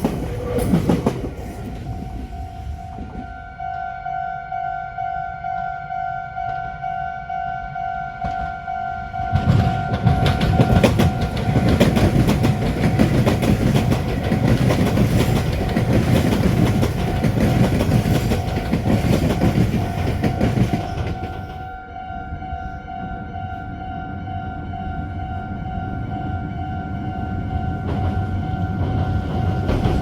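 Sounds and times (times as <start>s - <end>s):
train wheels clacking on rails: 0.0s - 3.8s, 8.1s - 21.8s, 27.1s - 30.0s
crossing warning bell: 0.1s - 30.0s.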